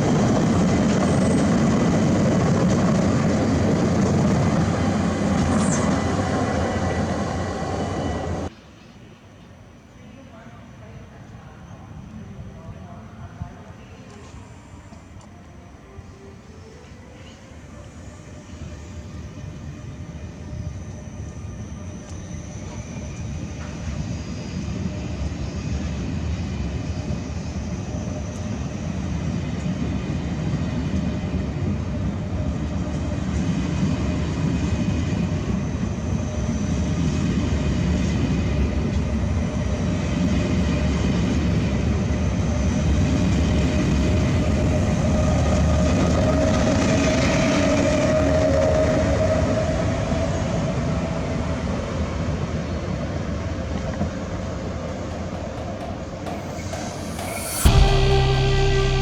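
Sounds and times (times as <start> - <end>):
train rumbling: 0.0 - 9.4, 11.2 - 59.0
train whining tones: 0.0 - 9.4, 34.0 - 59.0.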